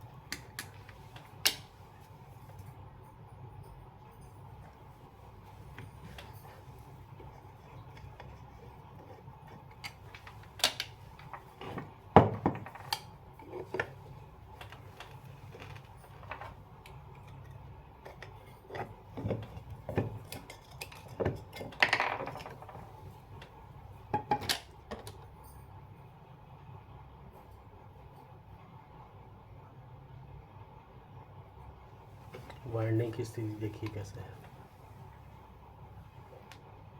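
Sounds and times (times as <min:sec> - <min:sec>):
metal fan parts clinking: 0:00.3 - 0:23.5.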